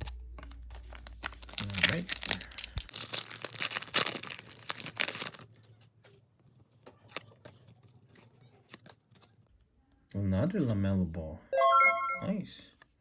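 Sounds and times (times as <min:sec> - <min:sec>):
wrapper tearing and crinkling: 0:00.5 - 0:05.7.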